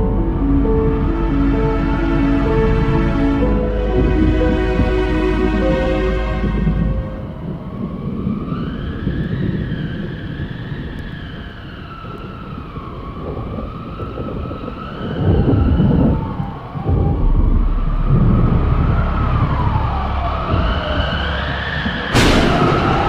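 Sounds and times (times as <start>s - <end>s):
low rumble: 0.0s - 9.1s, 16.0s - 23.0s
siren wailing: 14.9s - 23.0s.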